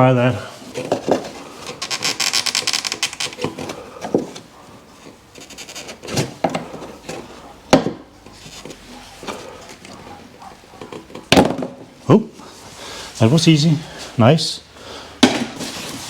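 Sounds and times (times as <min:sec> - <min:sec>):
plastic tank rattling and scraping: 0:00.7 - 0:12.0
tank knocking against car body: 0:11.3 - 0:11.9.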